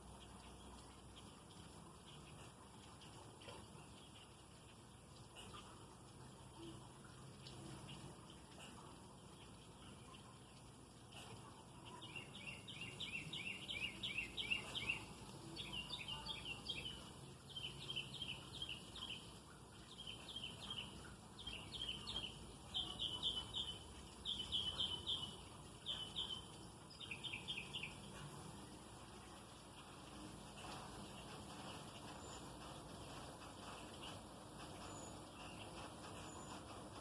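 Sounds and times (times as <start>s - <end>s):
small bird chirping: 11.2s - 28.6s.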